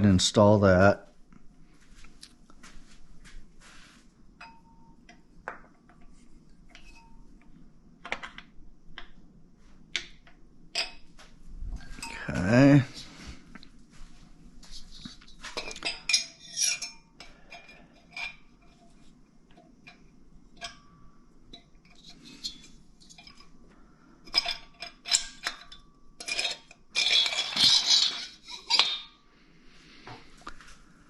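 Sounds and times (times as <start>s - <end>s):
metal engine parts clinking: 15.2s - 18.9s, 19.5s - 23.6s, 24.2s - 29.2s.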